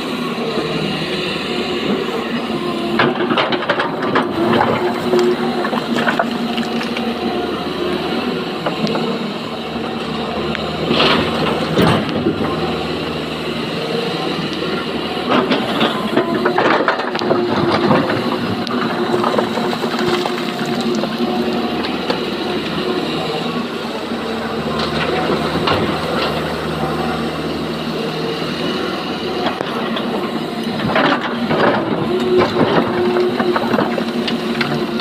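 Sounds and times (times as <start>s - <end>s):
excavator diesel engine running: 0.0s - 35.0s
rocks clattering and knocking: 16.5s - 21.1s.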